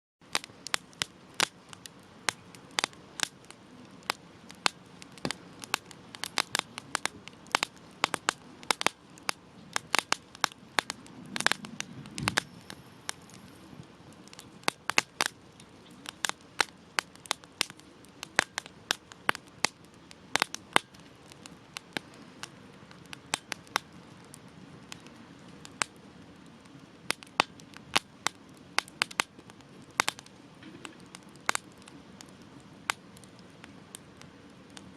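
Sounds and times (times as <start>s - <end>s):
campfire crackling: 0.2s - 34.9s
rush of flame: 0.3s - 15.4s
hiss of burning: 0.3s - 34.9s.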